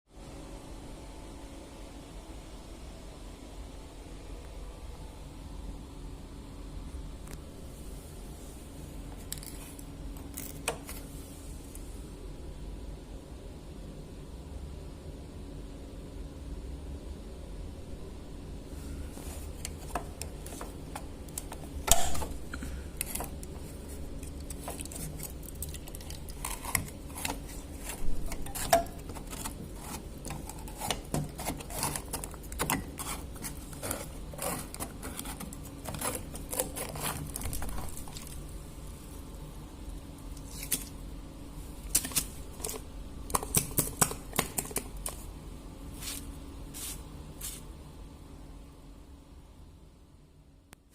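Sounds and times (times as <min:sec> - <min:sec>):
low steady hum: 0:00.1 - 0:50.9
hands clicking and scraping machine parts: 0:23.0 - 0:38.4.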